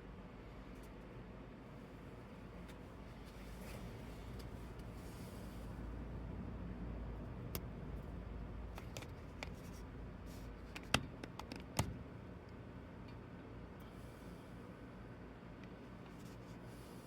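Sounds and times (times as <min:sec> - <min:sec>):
low steady hum: 0:00.0 - 0:17.0
parts clicking and tapping: 0:10.7 - 0:12.0.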